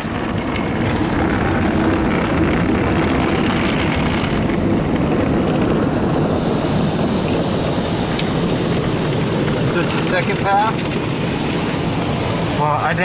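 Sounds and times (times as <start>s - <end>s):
car wash brushes whirring: 0.0s - 13.0s.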